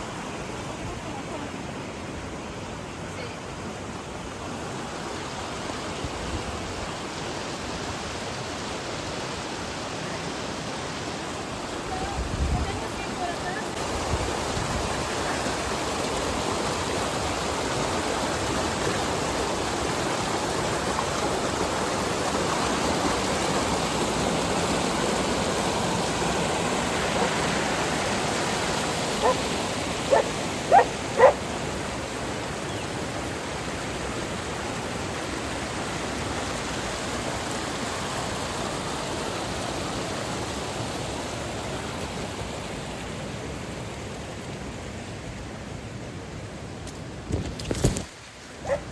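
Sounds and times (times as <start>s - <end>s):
water rushing: 0.0s - 48.9s
dog barking: 29.2s - 29.4s, 30.1s - 31.4s, 48.6s - 48.9s.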